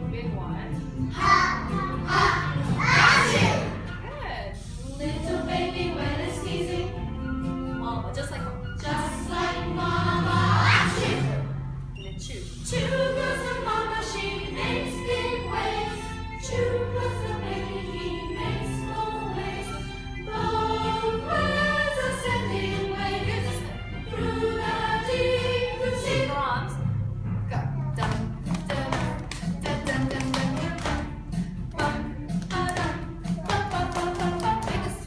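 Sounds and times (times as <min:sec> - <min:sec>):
low instrumental accompaniment: 0:00.0 - 0:35.0
group singing: 0:01.2 - 0:03.8, 0:05.0 - 0:06.9, 0:08.8 - 0:11.5, 0:12.6 - 0:26.3.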